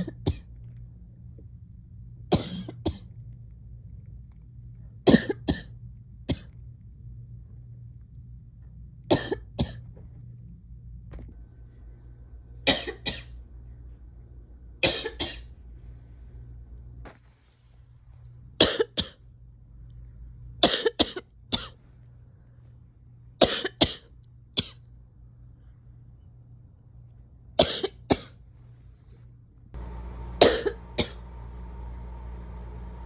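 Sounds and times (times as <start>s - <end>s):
steady low hum: 0.0s - 33.0s
person coughing: 2.3s - 3.1s, 5.1s - 5.7s, 9.1s - 9.8s, 12.7s - 13.4s, 14.8s - 15.5s, 18.6s - 19.2s, 20.6s - 21.8s, 23.4s - 24.8s, 27.6s - 28.4s, 30.4s - 31.3s.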